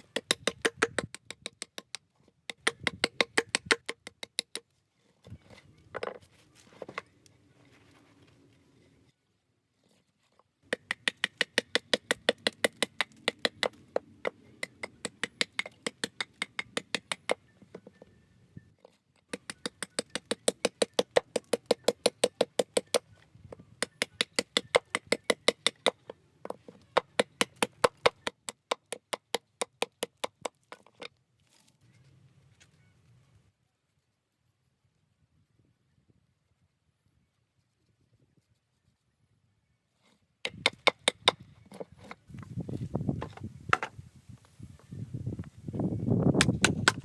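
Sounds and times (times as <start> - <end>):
mallet tapping chisel: 0.0 - 4.6, 10.7 - 18.1, 19.3 - 30.8, 40.5 - 42.2, 46.4 - 47.0.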